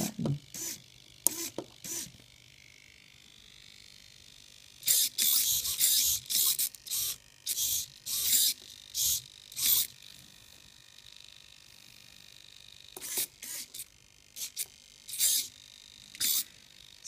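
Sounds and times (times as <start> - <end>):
servo motors whirring: 0.0 - 2.2, 4.8 - 10.4, 12.9 - 17.0.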